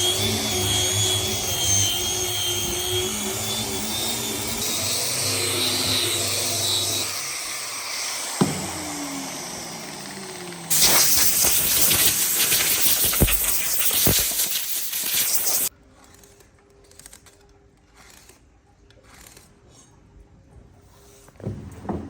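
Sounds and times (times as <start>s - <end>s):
falling whine: 0.0s - 15.7s
compressed air hissing: 10.7s - 15.7s.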